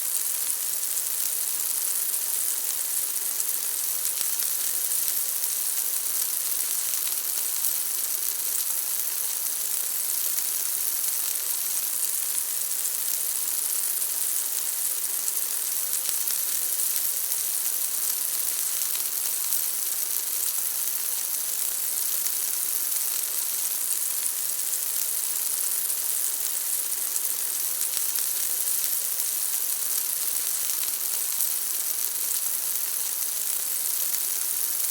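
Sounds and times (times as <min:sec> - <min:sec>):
bacon sizzling in a pan: 0:00.0 - 0:34.9.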